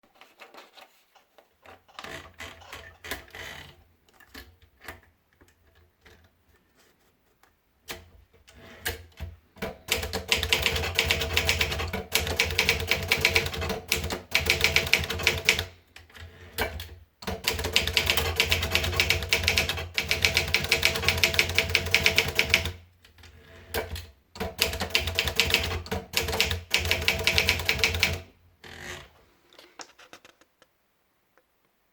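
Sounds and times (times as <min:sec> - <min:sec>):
manual typewriter keys clacking: 0:09.6 - 0:15.7, 0:16.6 - 0:22.8, 0:23.8 - 0:28.3.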